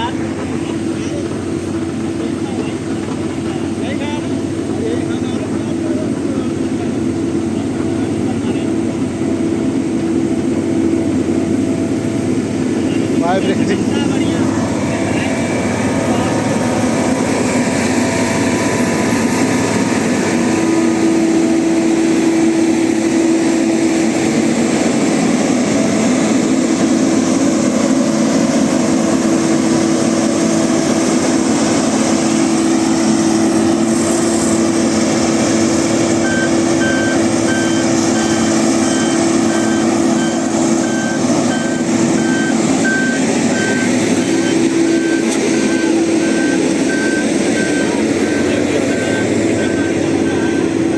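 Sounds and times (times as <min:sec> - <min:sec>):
diesel engine drone: 0:00.0 - 0:50.9
reversing alarm beeping: 0:14.8 - 0:50.9.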